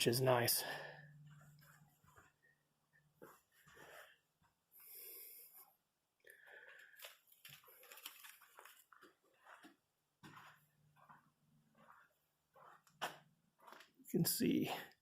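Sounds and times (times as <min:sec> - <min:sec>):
faint scuffs: 0:01.2 - 0:05.0, 0:06.8 - 0:14.0.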